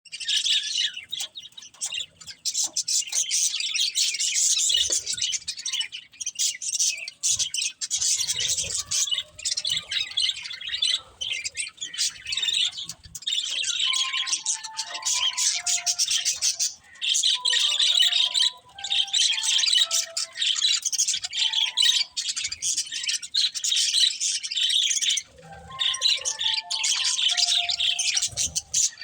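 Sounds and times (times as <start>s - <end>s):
budgerigars chirping and chattering: 0.1s - 29.0s.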